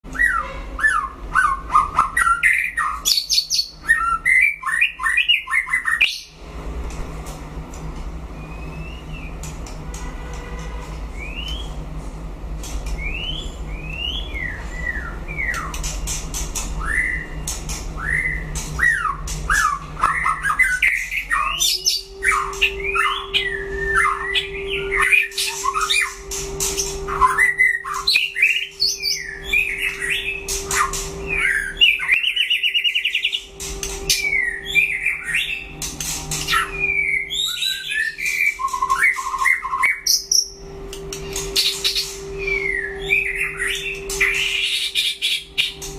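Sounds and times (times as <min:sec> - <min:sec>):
steady low hum: 0:05.7 - 0:45.9
bird singing varied whistles: 0:08.4 - 0:09.4, 0:16.8 - 0:35.6, 0:36.5 - 0:45.9
sharp clicking bird notes: 0:08.6 - 0:11.8, 0:15.4 - 0:23.5, 0:24.9 - 0:45.9.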